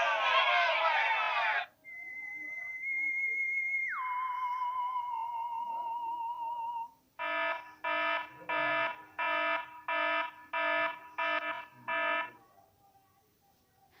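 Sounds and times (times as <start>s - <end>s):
buzzy alarm beeps: 7.2s - 12.3s.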